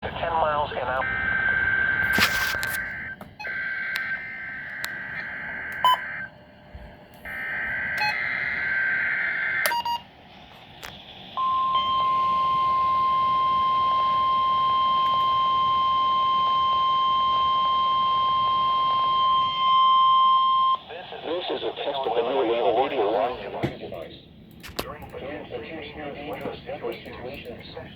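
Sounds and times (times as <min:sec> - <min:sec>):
steady warning alarm tone: 0:00.0 - 0:10.2, 0:11.4 - 0:21.0.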